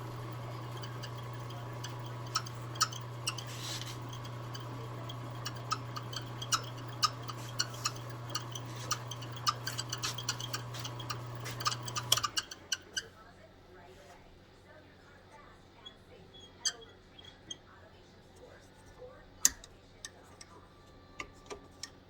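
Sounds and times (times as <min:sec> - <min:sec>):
wood lathe humming: 0:00.0 - 0:12.9.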